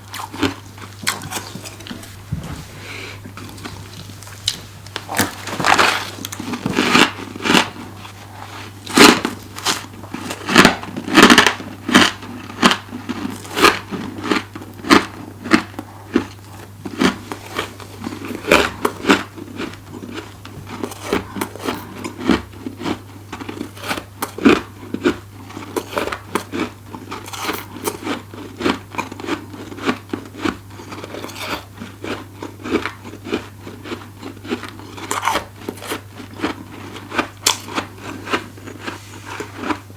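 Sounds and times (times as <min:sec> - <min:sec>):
crunching bites of frost: 0:04.3 - 0:07.8.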